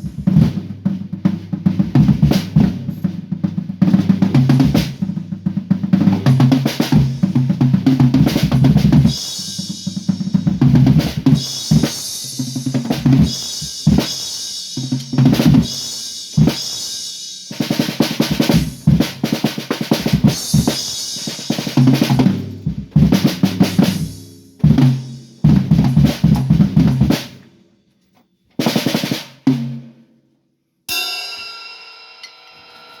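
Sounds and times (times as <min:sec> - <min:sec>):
drum kit fills: 0:00.0 - 0:27.4, 0:28.6 - 0:30.0, 0:30.9 - 0:33.0
ringing final drum strike: 0:30.9 - 0:33.0.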